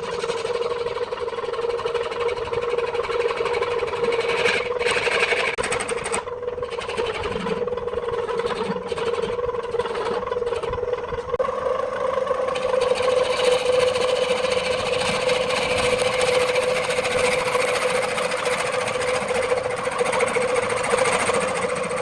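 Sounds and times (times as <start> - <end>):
lathe motor hum: 0.0 - 22.0.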